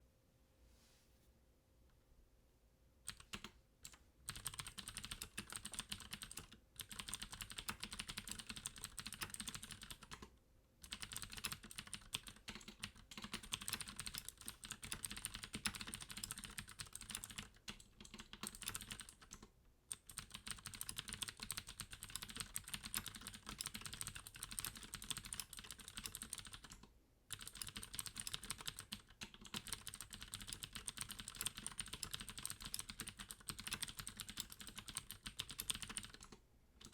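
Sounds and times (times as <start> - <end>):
fast typing on clicky keyboard: 3.1 - 36.9.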